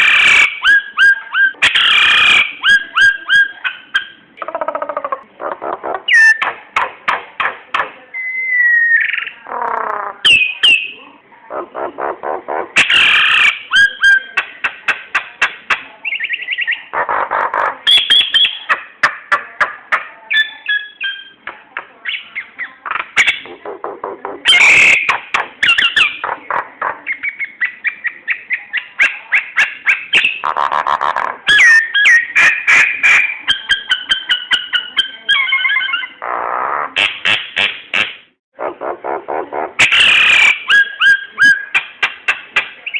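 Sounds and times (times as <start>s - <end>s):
songbird singing varied song: 16.0s - 17.0s.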